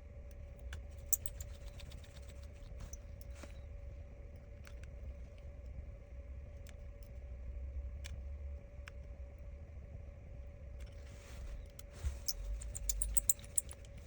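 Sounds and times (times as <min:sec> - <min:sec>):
steady low hum: 0:00.0 - 0:14.0
screwdriver clicks: 0:12.7 - 0:13.8.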